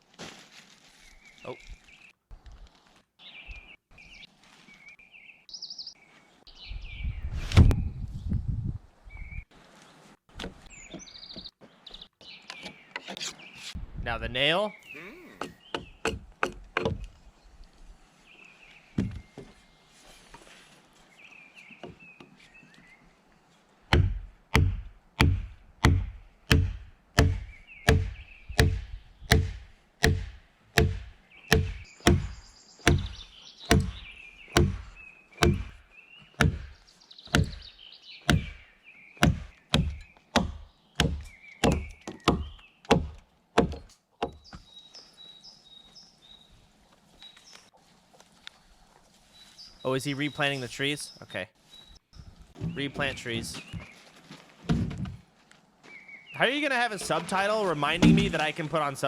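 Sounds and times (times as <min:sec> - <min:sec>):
hammer driving nail into wood: 0:23.9 - 0:32.3, 0:34.6 - 0:34.8, 0:35.4 - 0:35.7.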